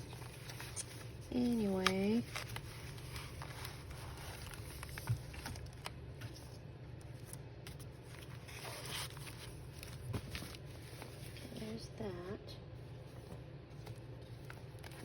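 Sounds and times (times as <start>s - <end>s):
paper and fabric rustling: 0.0s - 11.8s.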